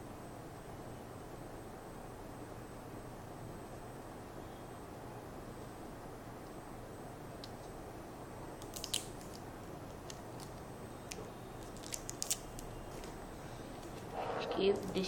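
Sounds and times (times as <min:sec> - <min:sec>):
steady background hiss: 0:00.0 - 0:15.0
adhesive tape crackling: 0:08.6 - 0:14.1.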